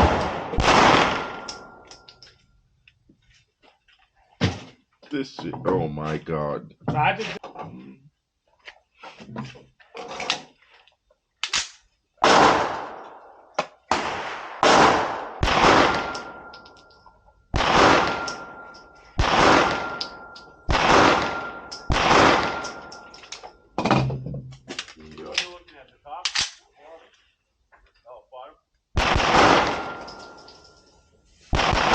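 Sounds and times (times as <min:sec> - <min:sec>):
pistol shots with long echo: 0:00.0 - 0:01.8, 0:12.2 - 0:16.7, 0:17.5 - 0:23.1, 0:29.0 - 0:30.7, 0:31.5 - 0:31.9.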